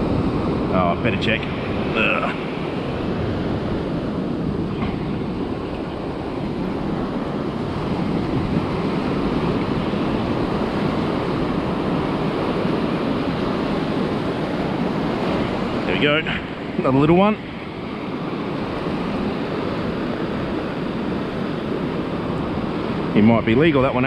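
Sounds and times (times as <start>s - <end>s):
ocean surf breaking: 0.0s - 24.0s
wind on microphone: 0.0s - 24.0s.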